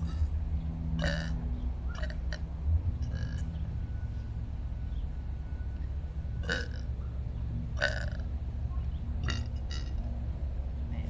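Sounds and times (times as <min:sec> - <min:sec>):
low background rumble: 0:00.0 - 0:11.0
croaky burp: 0:01.0 - 0:02.4, 0:03.0 - 0:03.5, 0:06.4 - 0:06.9, 0:07.8 - 0:08.3, 0:09.2 - 0:10.0.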